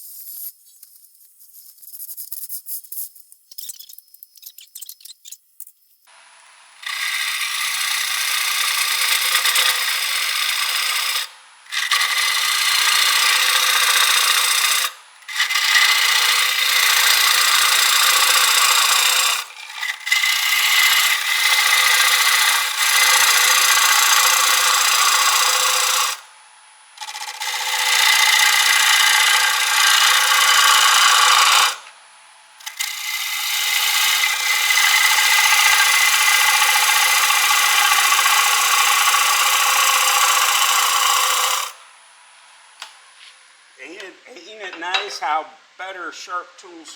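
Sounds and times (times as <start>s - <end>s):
lathe tool cutting wood: 6.1s - 26.4s, 27.0s - 32.0s, 32.6s - 41.9s.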